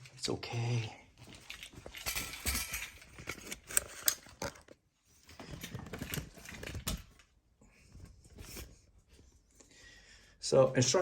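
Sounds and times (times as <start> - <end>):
plastic clicks and rubbing: 1.5 - 4.8.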